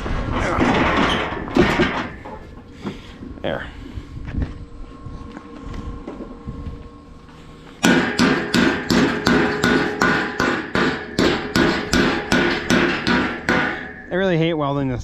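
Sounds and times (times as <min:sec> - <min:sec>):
hammer striking metal pipe: 0:07.8 - 0:14.4.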